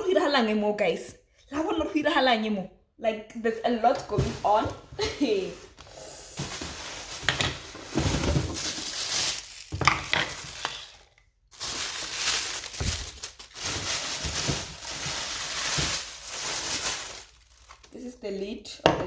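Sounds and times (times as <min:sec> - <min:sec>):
packaging rustling and crinkling: 0:04.1 - 0:18.0.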